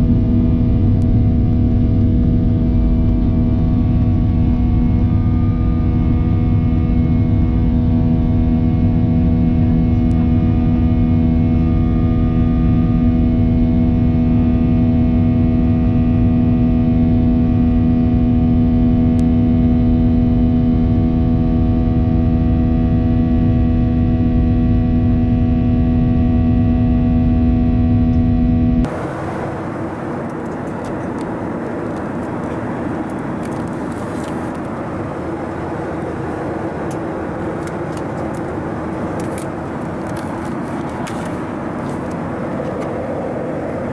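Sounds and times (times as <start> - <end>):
aircraft engine rumble and hum: 0.0 - 43.9
even rushing noise: 28.9 - 43.9.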